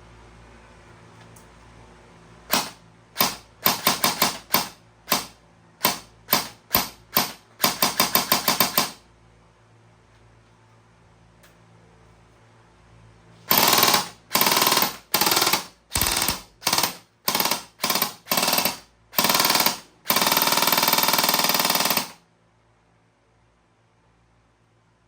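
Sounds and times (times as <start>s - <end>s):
airsoft gun firing bursts: 2.5s - 9.0s, 13.5s - 22.2s.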